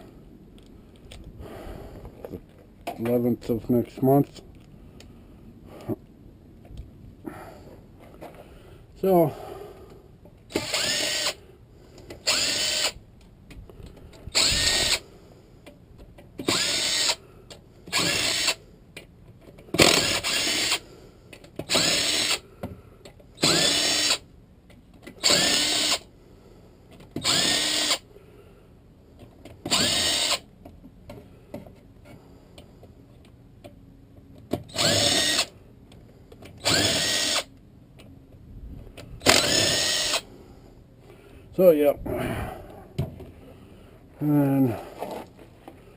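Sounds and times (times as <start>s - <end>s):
cordless power tool driving bolts: 10.5s - 11.4s, 12.1s - 13.0s, 14.3s - 15.0s, 16.4s - 17.2s, 17.9s - 18.6s, 19.7s - 20.8s, 21.6s - 22.4s, 23.4s - 24.2s, 25.0s - 26.1s, 27.2s - 28.0s, 29.6s - 30.5s, 34.6s - 35.5s, 36.5s - 37.5s, 39.2s - 40.2s.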